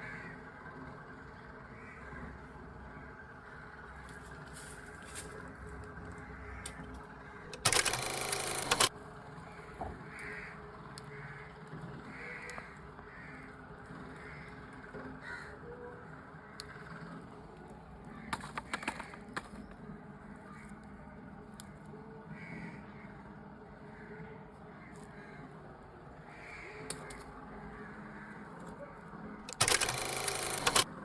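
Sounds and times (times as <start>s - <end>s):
sharp clicks: 6.6s - 9.0s, 17.5s - 19.8s, 29.4s - 30.9s.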